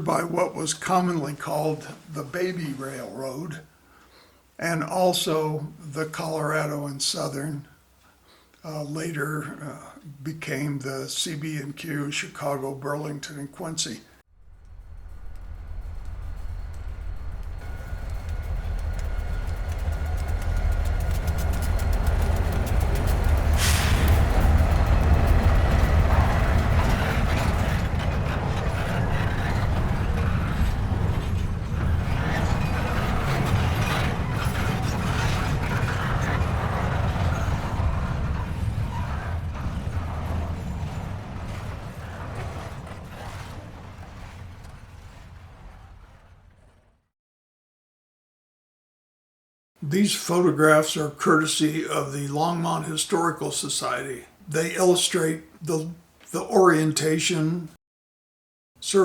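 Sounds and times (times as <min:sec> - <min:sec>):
train rumble: 0:14.3 - 0:46.9
rail clicks: 0:14.5 - 0:46.7.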